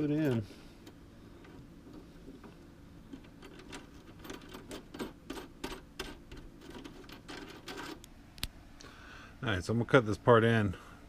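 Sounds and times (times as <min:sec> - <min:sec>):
small lock clicks and rattles: 0:03.1 - 0:08.1.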